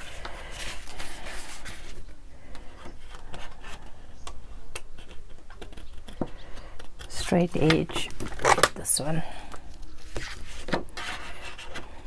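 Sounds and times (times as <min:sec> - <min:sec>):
paper rustling: 0:00.0 - 0:04.0, 0:09.8 - 0:12.0
scissors snipping paper: 0:04.7 - 0:08.7.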